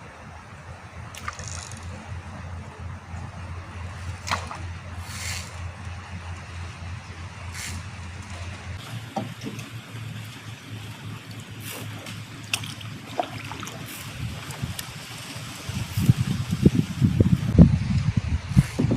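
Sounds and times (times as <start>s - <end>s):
water sloshing against boat: 1.2s - 16.3s
short splashes or knocks: 4.1s - 5.5s.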